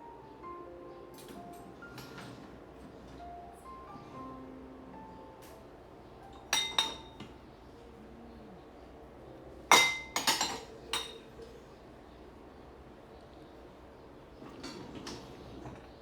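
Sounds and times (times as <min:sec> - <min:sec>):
dishes clinking: 0:06.3 - 0:07.4, 0:09.7 - 0:11.5, 0:14.4 - 0:15.9.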